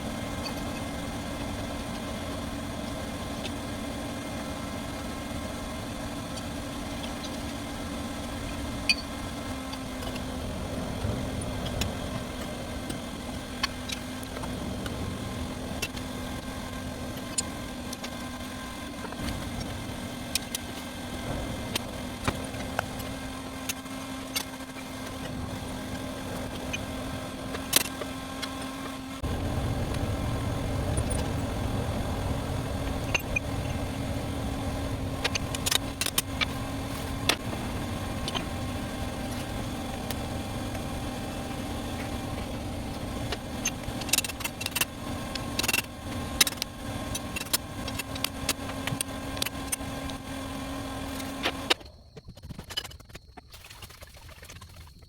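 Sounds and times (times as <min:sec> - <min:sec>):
steady machine hum: 0:00.0 - 0:52.3
deep rumble: 0:09.9 - 0:23.9, 0:29.2 - 0:48.2.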